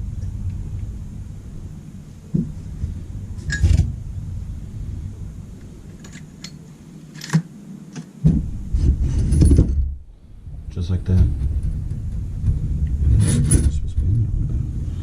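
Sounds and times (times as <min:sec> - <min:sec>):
low hum: 0:00.0 - 0:15.0
light clicks of metal parts: 0:05.9 - 0:08.2.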